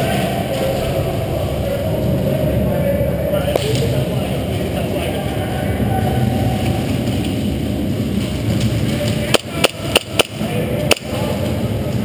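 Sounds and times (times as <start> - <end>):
low background rumble: 0.0 - 12.0
airsoft gun shots: 9.3 - 11.1.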